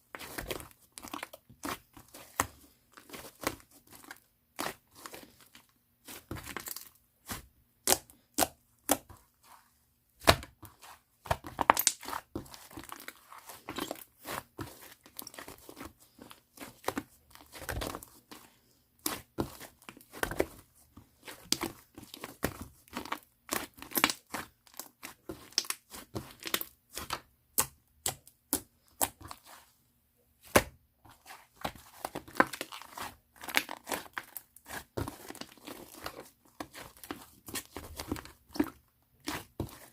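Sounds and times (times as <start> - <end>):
slime popping and crackling: 11.3 - 13.0.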